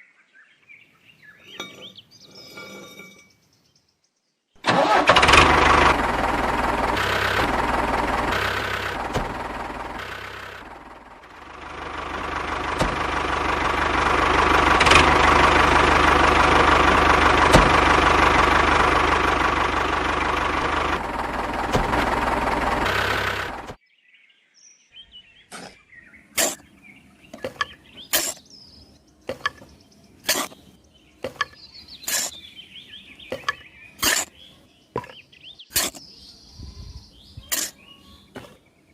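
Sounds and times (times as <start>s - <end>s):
motor running loudly: 5.0s - 23.8s.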